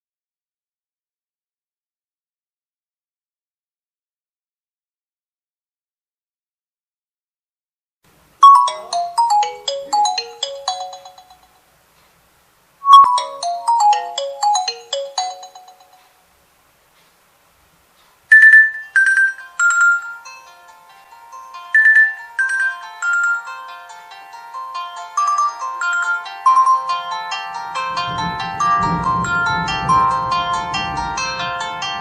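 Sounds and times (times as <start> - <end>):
phone ringtone quick falling notes: 8.4 - 11.6, 12.8 - 16.1, 18.3 - 20.3, 21.4 - 24.0, 24.7 - 32.0
ringtone with held chords: 8.4 - 11.7, 12.8 - 16.3, 18.3 - 32.0.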